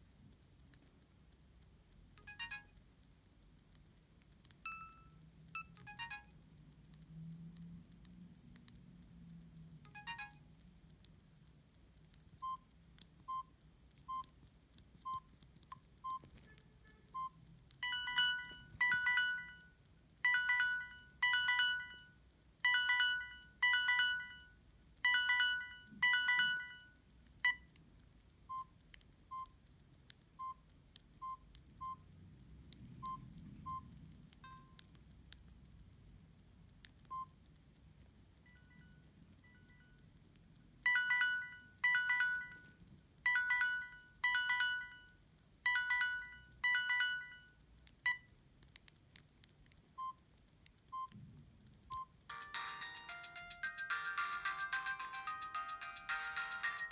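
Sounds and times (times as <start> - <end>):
phone key tone beeps: 2.2 - 2.7, 4.7 - 6.3, 9.9 - 10.4, 17.2 - 27.6, 40.9 - 45.1, 45.7 - 48.3
phone ringtone bell-like chimes: 17.8 - 19.7, 20.3 - 22.1, 22.7 - 24.5, 25.1 - 26.9, 40.9 - 42.7, 43.3 - 45.1, 45.7 - 47.5, 52.3 - 56.9.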